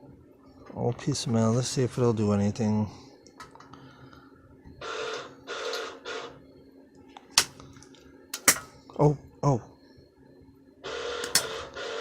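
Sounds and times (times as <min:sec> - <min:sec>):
welding machine hum: 0:10.9 - 0:12.0.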